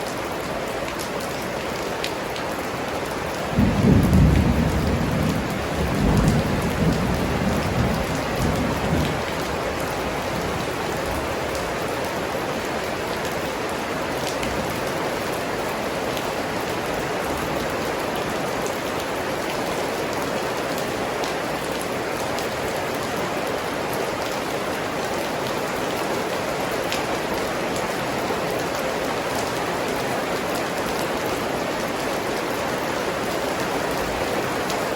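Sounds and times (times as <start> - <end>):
steady rain falling: 0.0 - 34.9
thunder rumbling: 3.6 - 9.8.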